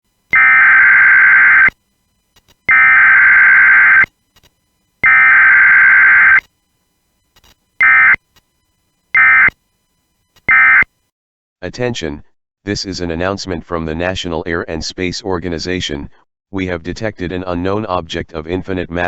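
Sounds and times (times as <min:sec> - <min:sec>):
harsh digital alert tones: 0:00.4 - 0:01.7, 0:02.7 - 0:04.1, 0:05.0 - 0:06.4, 0:07.8 - 0:08.2, 0:09.2 - 0:09.5, 0:10.5 - 0:10.8.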